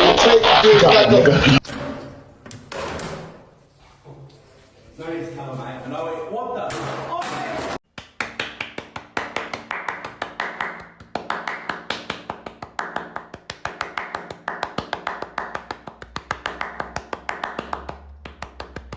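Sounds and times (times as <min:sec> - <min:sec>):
rapid even tapping: 0:08.4 - 0:18.9.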